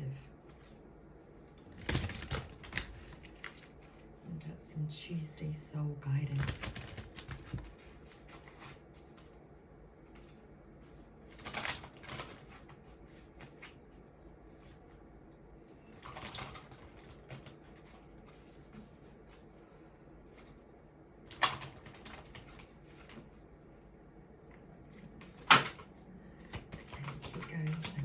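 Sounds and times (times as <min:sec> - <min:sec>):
cards shuffling: 0:25.0 - 0:28.0.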